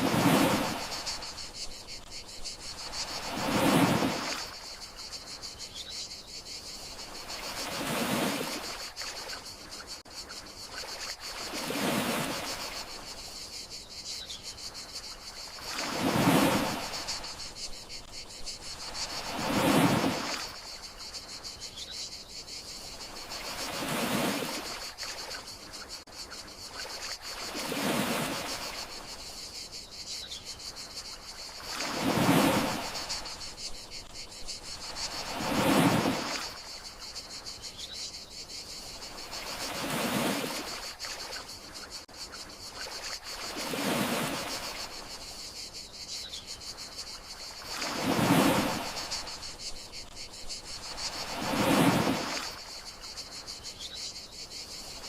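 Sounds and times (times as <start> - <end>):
sea waves washing ashore: 0.0 - 5.4, 6.8 - 9.7, 10.7 - 13.2, 15.1 - 21.3, 22.9 - 25.4, 26.8 - 29.2, 30.9 - 33.8, 34.5 - 37.4, 38.9 - 42.1, 42.7 - 45.3, 47.2 - 53.2
crickets chirring: 0.0 - 55.0.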